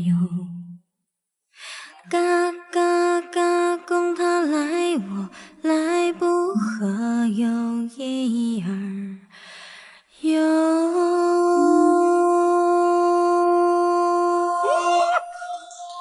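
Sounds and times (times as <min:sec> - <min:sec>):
person singing: 0:10.3 - 0:16.0.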